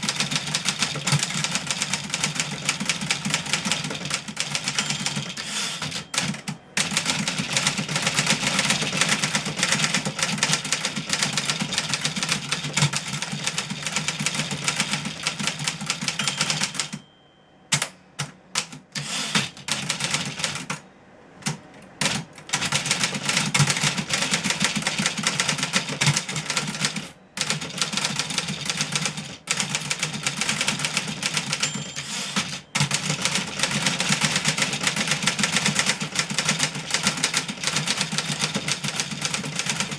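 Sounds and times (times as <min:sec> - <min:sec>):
manual typewriter typing: 0:00.0 - 0:17.0, 0:17.7 - 0:20.8, 0:21.4 - 0:39.9.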